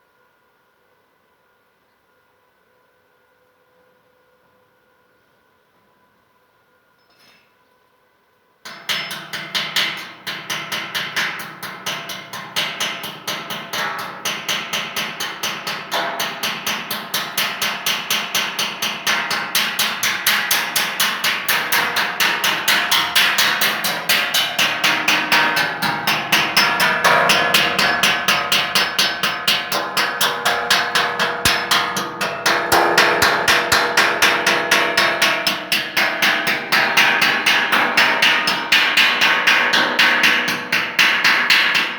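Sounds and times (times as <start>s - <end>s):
hammer striking metal: 8.7s - 41.9s.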